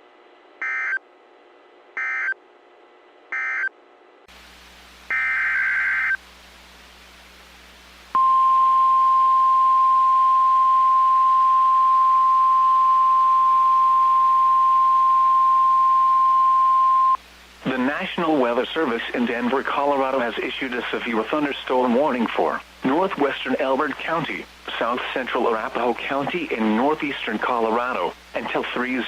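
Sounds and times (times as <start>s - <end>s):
loud steady alarm tone: 5.1s - 6.2s.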